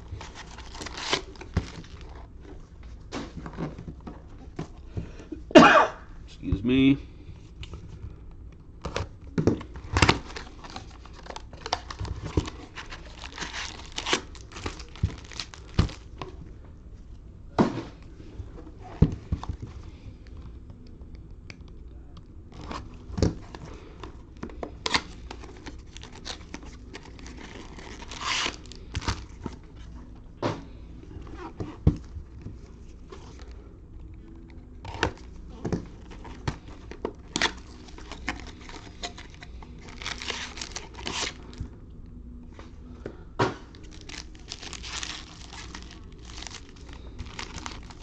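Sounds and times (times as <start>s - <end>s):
plastic wrapping crinkling and tearing: 0.0s - 2.3s, 9.6s - 16.3s, 24.7s - 29.9s, 34.6s - 41.6s, 43.7s - 48.0s
packaging clicks and crackles: 0.1s - 2.2s, 8.8s - 16.3s, 24.3s - 29.6s, 33.2s - 41.5s, 43.7s - 48.0s.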